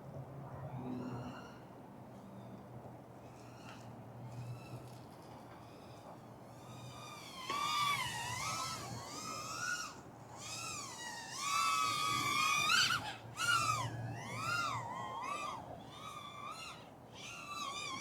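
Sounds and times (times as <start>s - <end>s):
drone motors whining: 6.6s - 18.0s.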